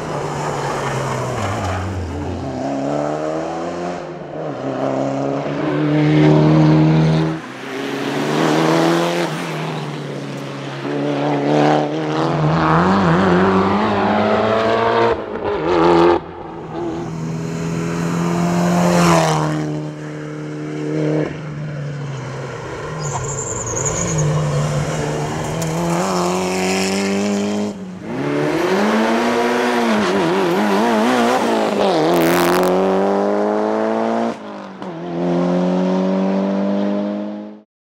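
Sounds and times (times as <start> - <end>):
high squeal: 22.2 - 25.6
car engine revving hard: 24.0 - 34.4.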